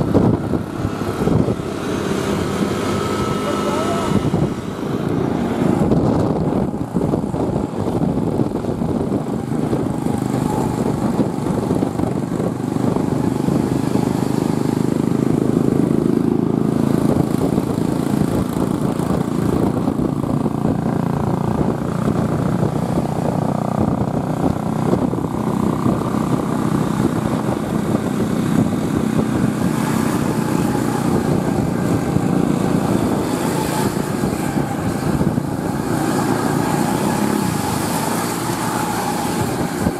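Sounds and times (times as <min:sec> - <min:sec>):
diesel bus engine rumbling: 0:00.0 - 0:39.9.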